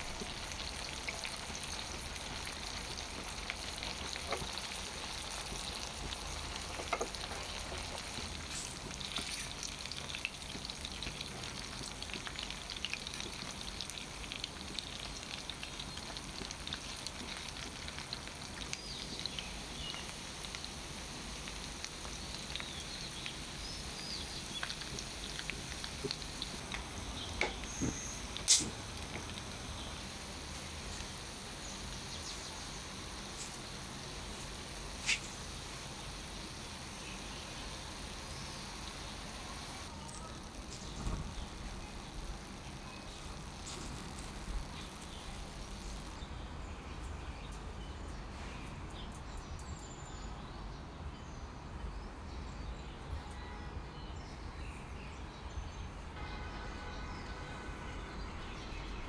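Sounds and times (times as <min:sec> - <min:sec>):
chicken sizzling in oil: 0:00.0 - 0:46.2.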